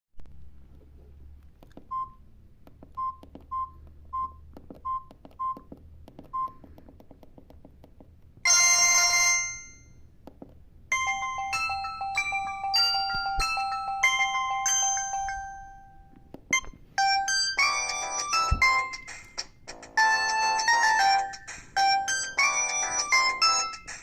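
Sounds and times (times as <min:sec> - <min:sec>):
keypad beeps with key clicks: 0:01.8 - 0:02.3, 0:02.9 - 0:06.7, 0:16.5 - 0:24.0
bell-like ringtone melody: 0:08.5 - 0:10.0, 0:10.9 - 0:24.0.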